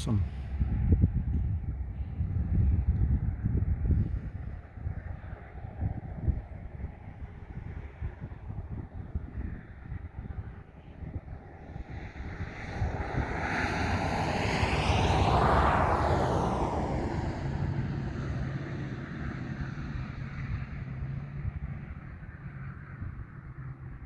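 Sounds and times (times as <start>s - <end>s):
vehicle passing by: 11.7s - 23.8s.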